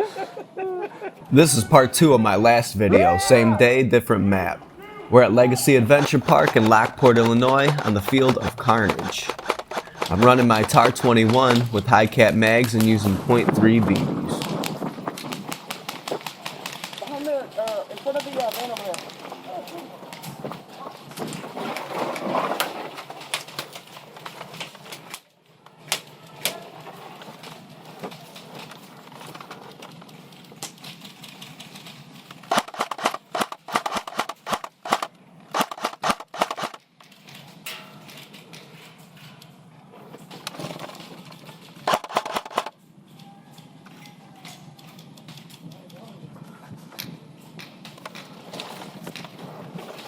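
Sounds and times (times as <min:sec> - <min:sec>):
airsoft guns firing: 0:05.2 - 0:17.3, 0:32.4 - 0:36.8, 0:41.8 - 0:42.7.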